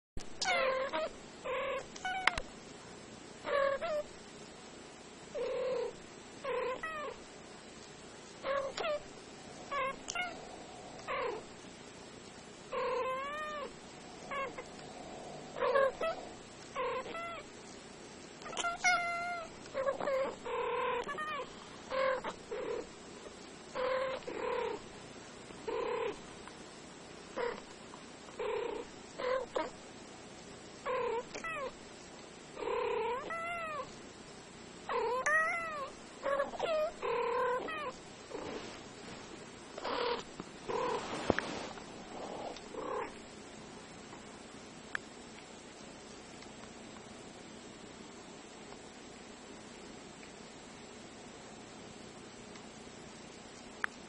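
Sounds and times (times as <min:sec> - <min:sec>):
cats meowing: 0:08.5 - 0:09.0, 0:09.6 - 0:11.4, 0:12.8 - 0:14.9, 0:15.5 - 0:17.4, 0:18.4 - 0:22.4, 0:30.9 - 0:31.7, 0:33.0 - 0:33.9, 0:35.0 - 0:38.0.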